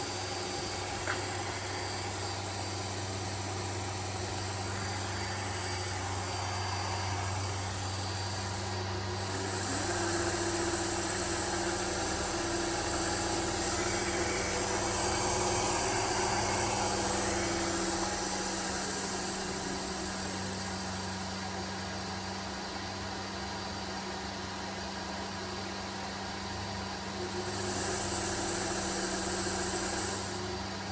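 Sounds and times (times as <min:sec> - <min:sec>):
electrical hum: 0:00.0 - 0:23.2
electric motor whine: 0:00.0 - 0:23.8, 0:27.0 - 0:30.9.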